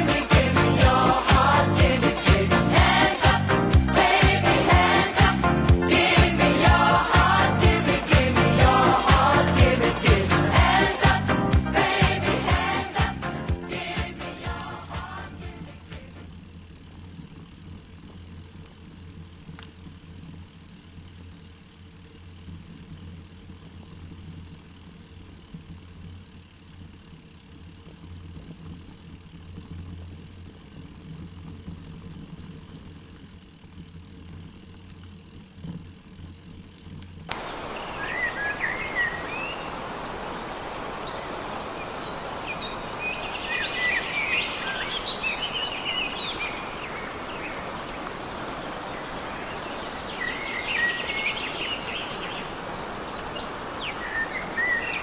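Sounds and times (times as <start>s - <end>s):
low hum with tones: 0.0s - 55.0s
small birds chirping: 36.8s - 55.0s
stream rushing water: 37.3s - 55.0s.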